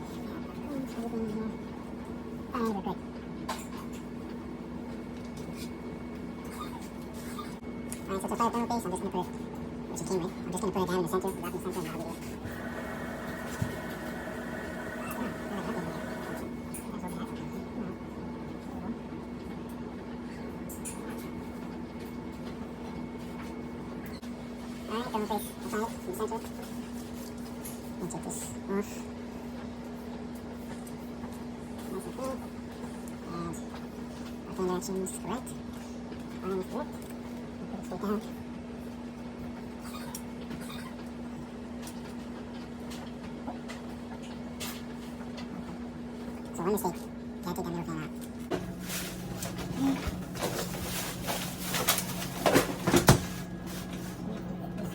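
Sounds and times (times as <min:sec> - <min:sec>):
steady low hum: 0:45.6 - 0:54.9.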